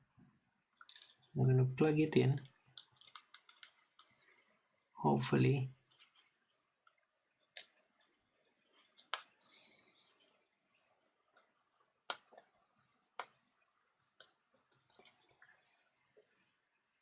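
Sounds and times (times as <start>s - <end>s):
small sharp clicks and taps: 2.4s - 4.2s, 6.0s - 8.2s, 8.8s - 9.4s, 12.1s - 12.6s, 13.2s - 13.4s.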